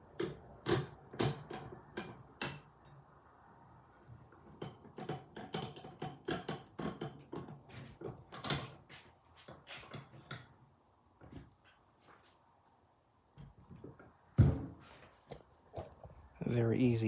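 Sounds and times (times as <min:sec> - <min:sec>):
vise clicking and clacking: 0:00.1 - 0:03.0, 0:04.5 - 0:10.6.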